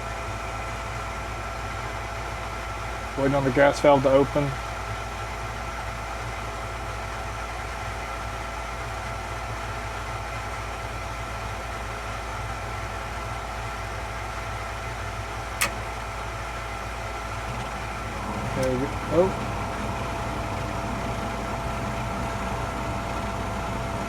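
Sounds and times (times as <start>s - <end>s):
furnace motor running with whine: 14.8s - 24.0s
sharp click: 15.6s - 15.8s.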